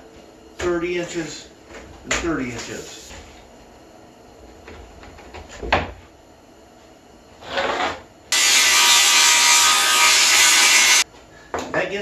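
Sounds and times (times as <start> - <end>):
power saw cutting plywood: 8.3 - 11.0.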